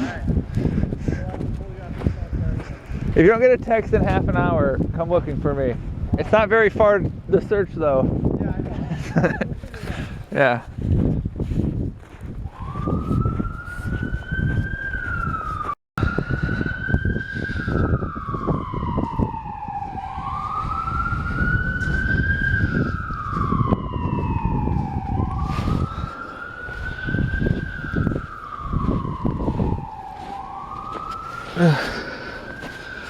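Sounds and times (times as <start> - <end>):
emergency vehicle siren wailing: 12.4 - 33.0
low rumbling noise: 14.3 - 33.0.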